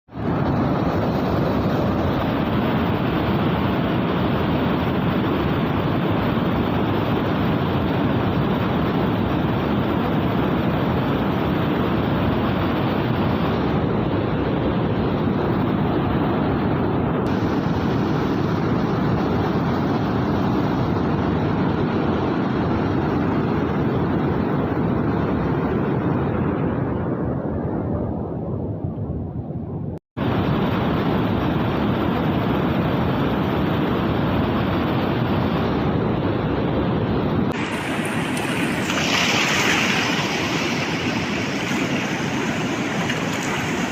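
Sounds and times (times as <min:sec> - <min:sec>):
loud rush of floodwater: 0:37.5 - 0:43.9.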